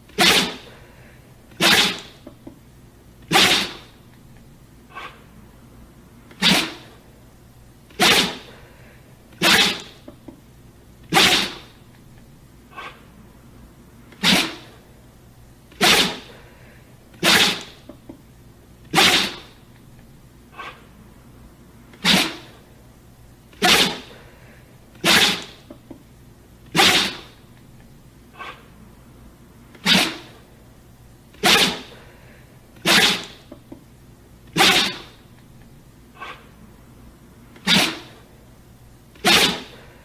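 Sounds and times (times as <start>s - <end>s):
dog sneezing: 0.1s - 2.3s, 3.3s - 3.9s, 4.9s - 5.2s, 6.3s - 7.0s, 7.9s - 10.1s, 11.1s - 11.8s, 12.7s - 13.1s, 14.1s - 14.8s, 15.7s - 17.9s, 18.9s - 19.6s, 20.5s - 20.9s, 21.9s - 22.6s, 23.5s - 25.8s, 26.7s - 27.4s, 28.4s - 28.7s, 29.7s - 30.4s, 31.4s - 33.5s, 34.5s - 35.2s, 36.2s - 36.5s, 37.6s - 38.2s, 39.2s - 39.8s.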